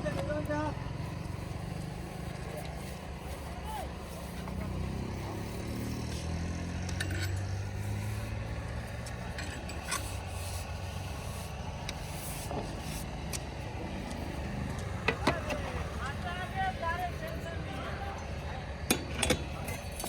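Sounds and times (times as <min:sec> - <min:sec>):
heavy diesel engine running: 0:00.0 - 0:20.0
metal scraping against soil: 0:01.1 - 0:17.0.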